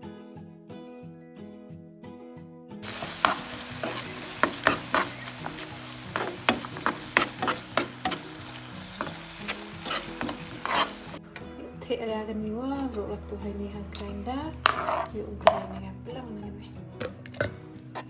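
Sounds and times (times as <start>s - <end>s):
background music: 0.0s - 18.0s
masala sizzling in a pan: 2.8s - 11.2s
spoon scraping a pan: 2.8s - 11.2s, 14.0s - 15.9s, 17.1s - 18.0s.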